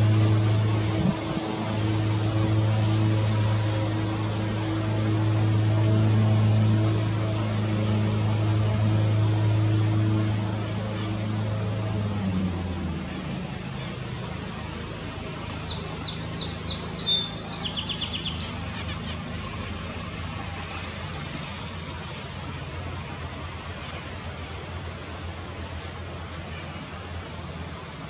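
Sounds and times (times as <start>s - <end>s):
low hum: 0.0s - 28.0s
songbird singing: 13.1s - 23.1s.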